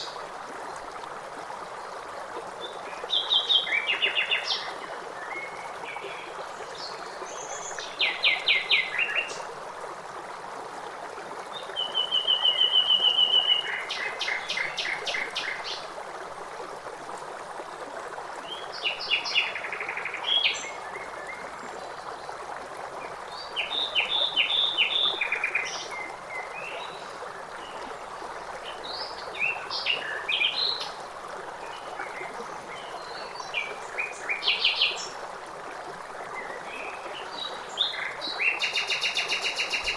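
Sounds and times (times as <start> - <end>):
flowing water rushing: 0.0 - 39.9
songbirds singing: 36.4 - 39.9.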